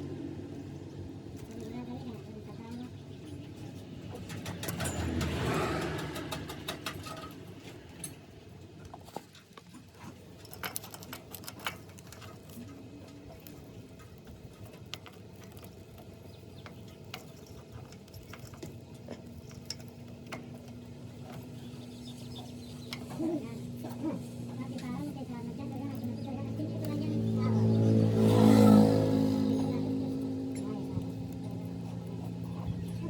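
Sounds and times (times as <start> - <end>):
tools and metal parts clicking: 4.1 - 33.0.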